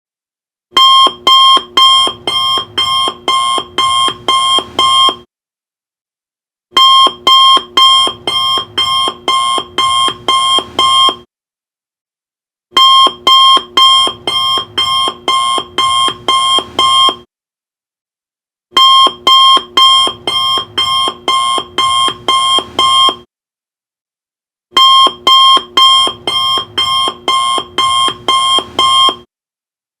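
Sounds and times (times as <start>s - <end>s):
alarm clock beeping: 0.8s - 5.2s, 6.8s - 11.2s, 12.8s - 17.2s, 18.8s - 23.3s, 24.8s - 29.3s.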